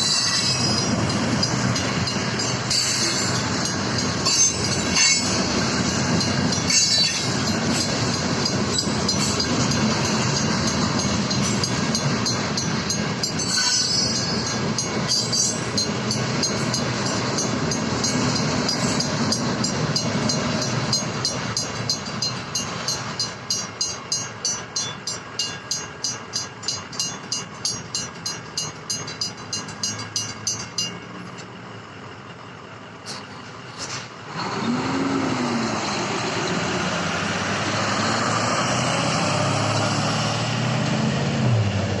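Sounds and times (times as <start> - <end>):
crossing bells dinging: 0.0 - 31.5
passing train rumble: 0.0 - 42.0
road vehicles passing: 31.0 - 42.0.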